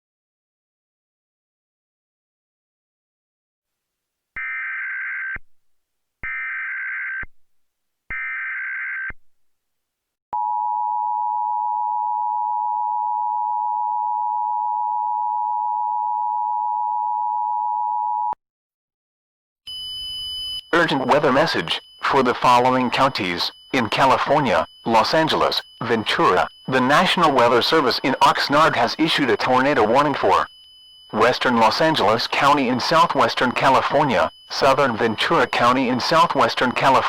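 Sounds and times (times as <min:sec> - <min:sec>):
electronic data header bursts: 0:20.0 - 0:37.0
two-tone alert signal: 0:20.7 - 0:37.0.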